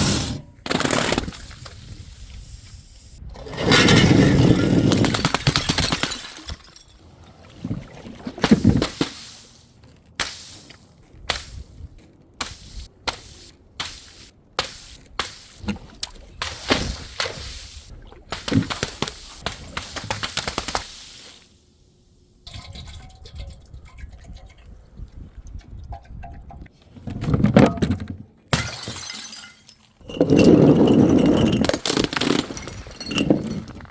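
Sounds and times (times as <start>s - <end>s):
objects dropped and crushed: 3.4s - 9.1s, 27.0s - 33.9s
liquid splashing: 22.5s - 26.6s.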